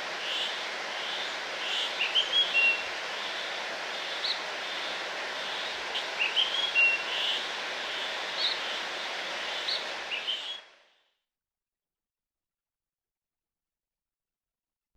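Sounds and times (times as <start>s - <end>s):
waterfall rushing: 0.0s - 10.8s
small birds chirping: 4.0s - 7.4s.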